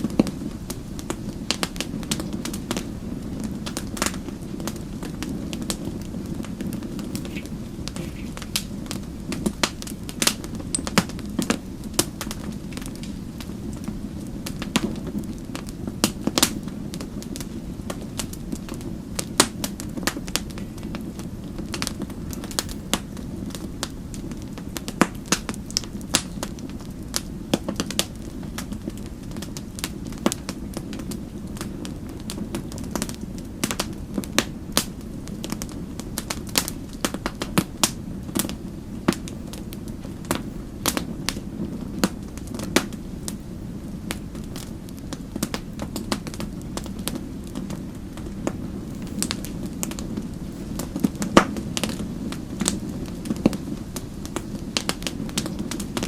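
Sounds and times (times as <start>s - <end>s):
wood fire crackling and popping: 0.0s - 56.0s.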